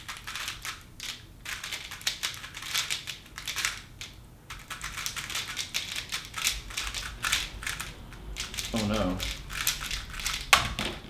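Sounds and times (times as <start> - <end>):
plastic puzzle cube clicking: 0.0 - 7.8.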